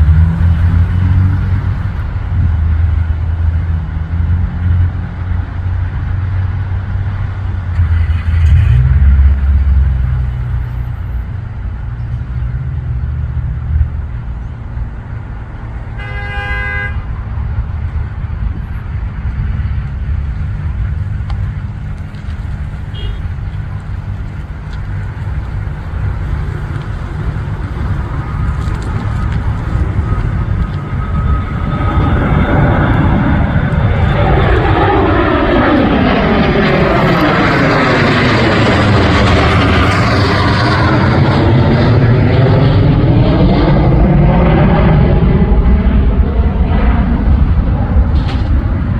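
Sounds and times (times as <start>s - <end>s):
aircraft taking off: 0.0s - 48.9s
road traffic rumble: 0.0s - 48.9s
vehicle horn: 15.9s - 17.2s, 22.9s - 23.3s.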